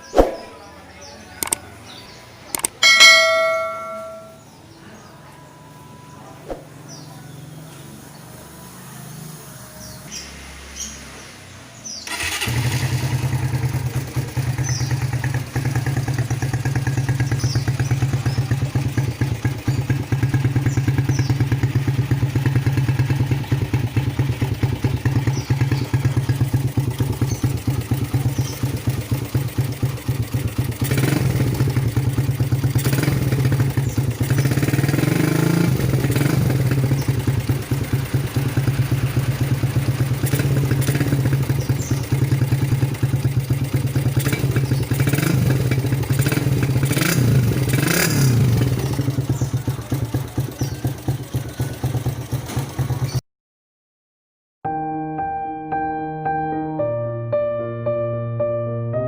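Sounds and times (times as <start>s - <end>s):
motorcycle engine idling: 0.6s - 5.3s, 11.8s - 53.2s.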